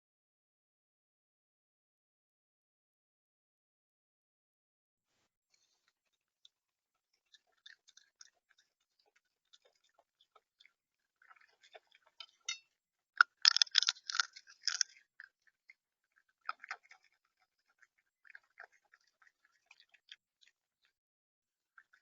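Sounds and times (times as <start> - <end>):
bird pecking seed: 13.2 - 15.3.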